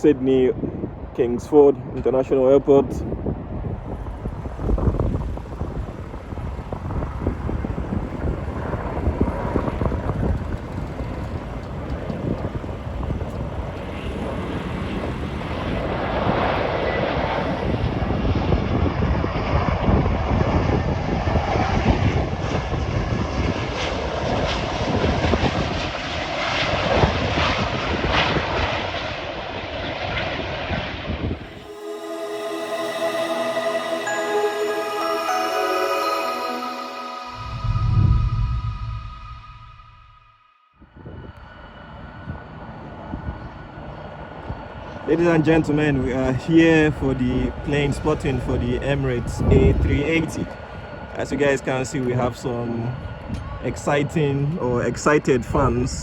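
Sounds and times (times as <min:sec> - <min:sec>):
jet engines running: 0:03.6 - 0:18.4.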